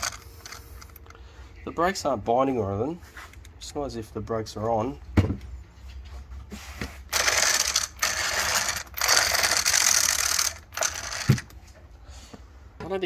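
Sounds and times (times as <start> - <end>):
toy car gears ratcheting: 0.0 - 1.1, 7.1 - 11.6.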